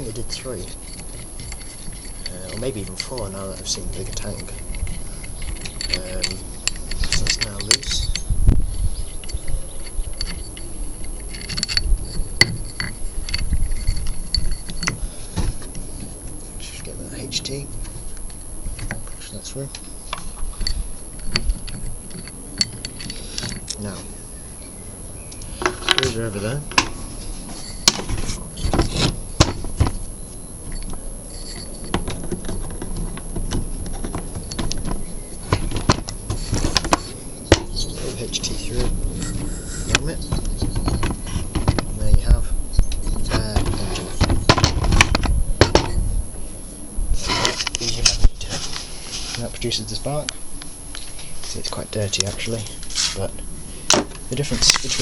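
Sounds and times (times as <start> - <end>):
metal parts and tools clinking: 0.0 - 46.2, 47.2 - 55.0
short metal scrape: 52.8 - 53.2.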